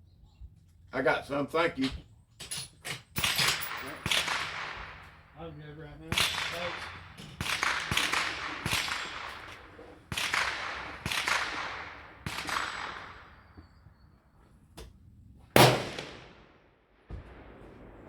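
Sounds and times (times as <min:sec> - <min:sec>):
rifle shots echoing: 0:03.2 - 0:13.6, 0:15.6 - 0:18.0.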